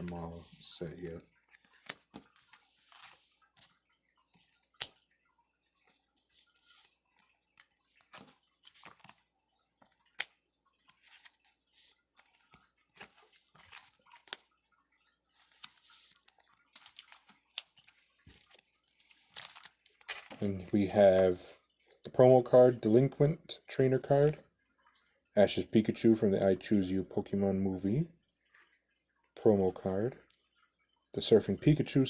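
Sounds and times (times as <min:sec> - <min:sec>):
crinkly plastic sleeve rustles: 0:15.3 - 0:20.8.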